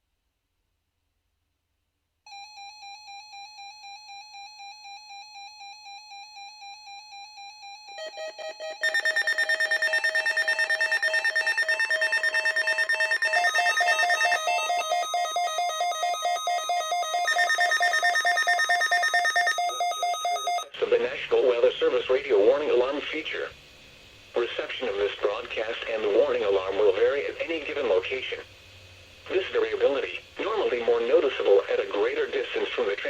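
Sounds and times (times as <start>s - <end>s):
beeping alarms: 3.4s - 20.7s
pulsing beep: 7.9s - 20.7s.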